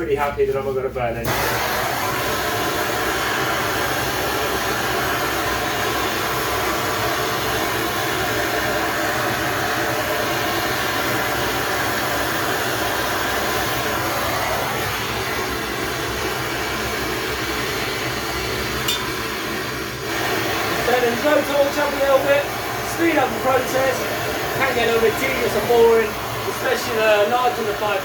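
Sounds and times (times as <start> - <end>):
torch flame hissing: 1.2 - 28.0.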